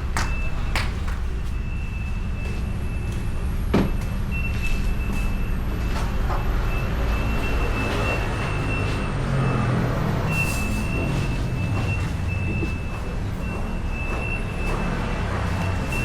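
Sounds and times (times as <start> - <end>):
scooter engine and road rumble: 0.0 - 16.0.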